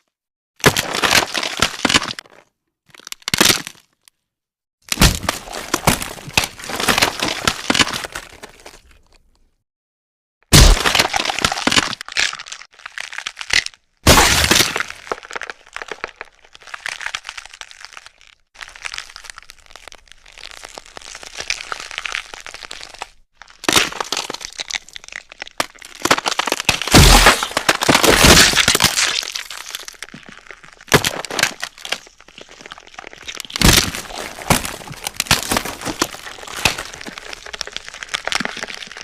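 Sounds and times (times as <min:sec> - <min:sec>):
bones cracking and snapping: 0:00.6 - 0:04.2, 0:04.9 - 0:09.4, 0:10.5 - 0:39.0
blood splatter: 0:04.9 - 0:08.0, 0:10.5 - 0:16.3, 0:18.7 - 0:39.0.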